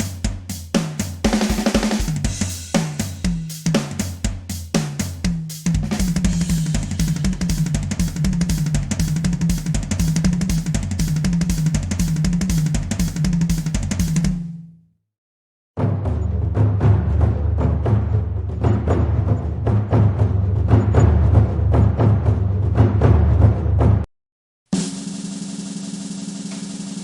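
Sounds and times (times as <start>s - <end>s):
drum kit playing: 0.0s - 14.8s.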